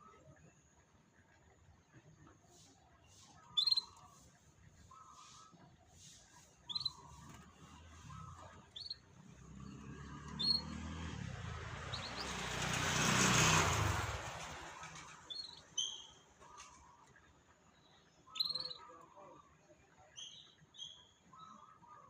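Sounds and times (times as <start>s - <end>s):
vehicle engine hum and tyre hiss: 2.1s - 17.2s
short bird chirps: 2.6s - 9.1s, 10.4s - 10.8s, 15.3s - 16.3s, 18.3s - 19.0s.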